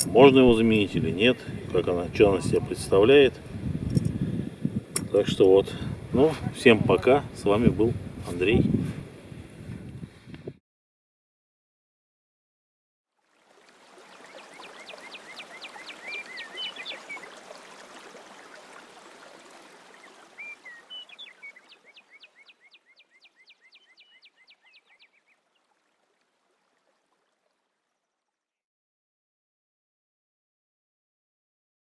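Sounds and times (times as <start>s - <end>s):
running water rushing: 0.0s - 9.5s, 13.2s - 28.2s
songbird trilling: 14.6s - 17.3s, 20.3s - 25.3s.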